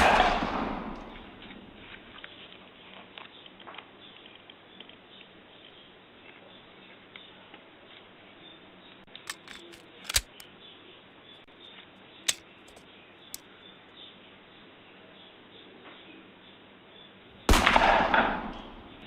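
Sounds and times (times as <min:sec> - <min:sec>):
faint steady background noise: 0:00.0 - 0:19.0
sharp clicks and snaps: 0:09.2 - 0:10.5, 0:12.3 - 0:13.4.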